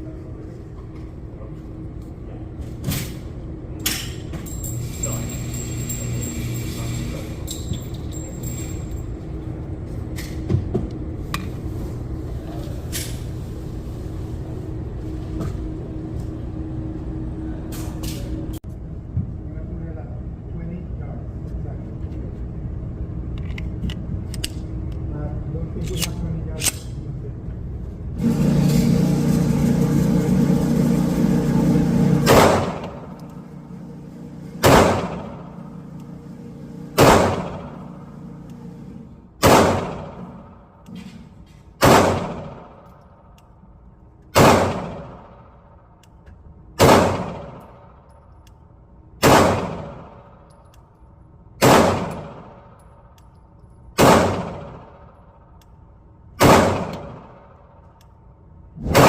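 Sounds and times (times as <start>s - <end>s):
steady droning noise: 28.1s - 40.8s
pistol shots: 34.6s - 35.4s, 37.0s - 37.8s, 39.4s - 40.4s, 41.8s - 42.8s, 44.3s - 45.4s, 46.8s - 47.6s, 49.2s - 50.2s, 51.6s - 52.6s, 54.0s - 55.1s, 56.4s - 57.5s.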